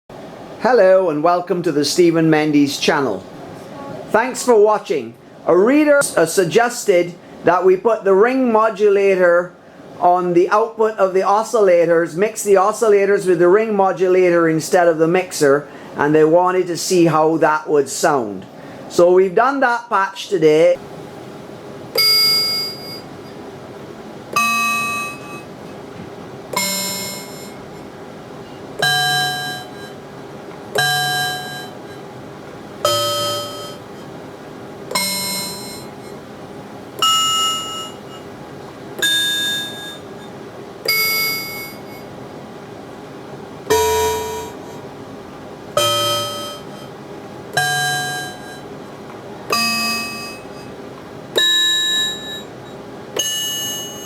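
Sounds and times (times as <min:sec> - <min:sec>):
faint steady hum: 0:00.1 - 0:54.0
synthesizer bell notes: 0:22.0 - 0:23.1, 0:24.4 - 0:25.5, 0:26.6 - 0:27.8, 0:28.4 - 0:30.0, 0:30.8 - 0:32.0, 0:32.8 - 0:34.1, 0:34.9 - 0:36.2, 0:37.0 - 0:38.3, 0:39.0 - 0:40.3, 0:40.9 - 0:42.1, 0:43.7 - 0:44.8, 0:45.8 - 0:46.9, 0:47.6 - 0:48.7, 0:49.5 - 0:50.8, 0:51.4 - 0:54.0.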